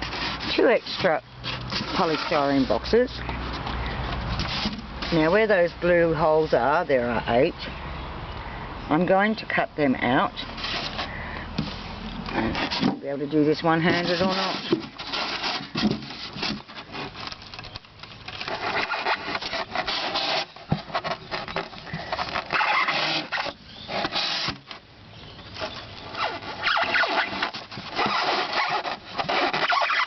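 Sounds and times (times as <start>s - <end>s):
sawing polystyrene by hand: 0.0s - 3.2s, 4.4s - 5.9s, 10.5s - 17.3s, 18.4s - 24.8s, 25.6s - 30.0s.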